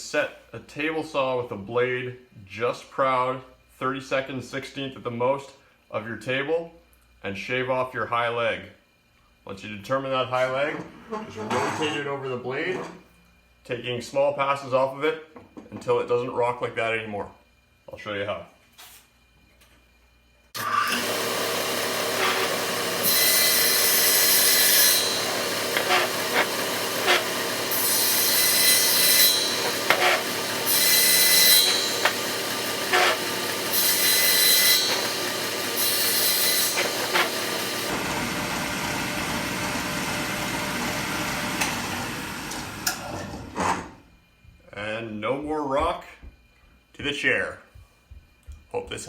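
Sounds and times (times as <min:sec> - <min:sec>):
saw blade hissing cut: 0:20.6 - 0:37.9
table saw running: 0:20.6 - 0:43.1.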